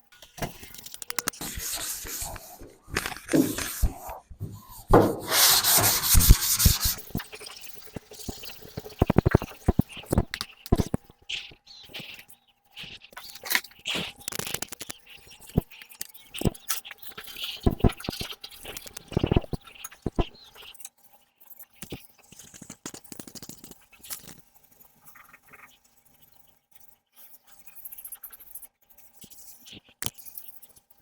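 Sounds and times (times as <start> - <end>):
sandpaper scraping: 0.5 - 7.4.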